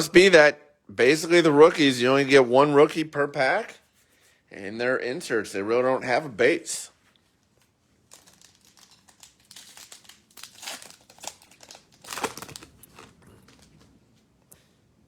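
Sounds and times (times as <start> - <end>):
foil wrapper tearing and crinkling: 7.6 - 13.8.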